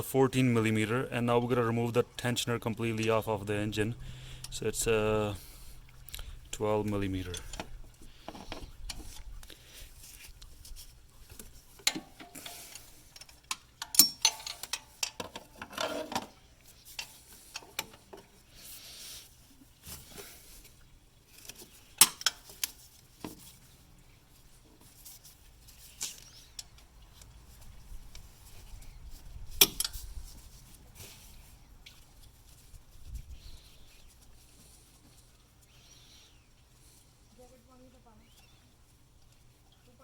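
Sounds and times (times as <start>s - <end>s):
hand tools clinking on metal: 11.8s - 16.0s.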